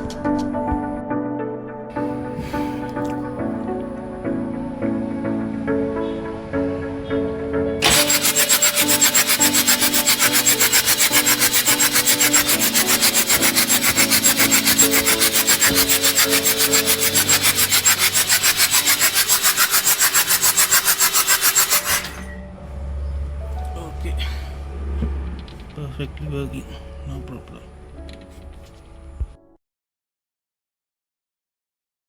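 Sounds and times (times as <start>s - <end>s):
background music: 0.0s - 29.6s
rapid rasping hisses: 7.8s - 22.2s.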